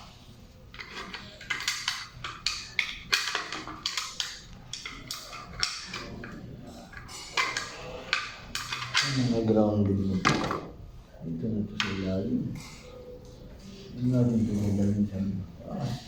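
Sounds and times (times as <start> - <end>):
hard objects clicking and knocking: 0.7 - 10.7.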